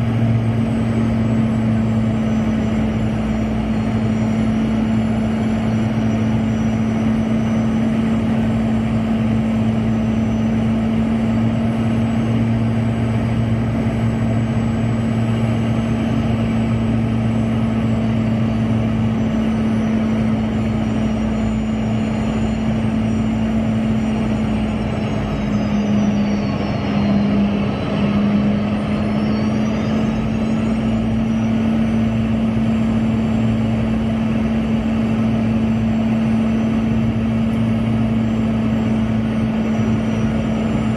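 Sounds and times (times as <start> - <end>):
jet engines humming and whining: 0.0 - 40.9.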